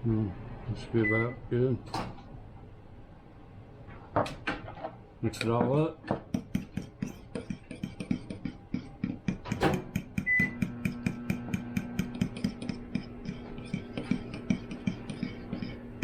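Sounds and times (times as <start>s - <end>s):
steady low hum: 0.0s - 16.0s
utensil scraping against bowl: 10.2s - 16.0s.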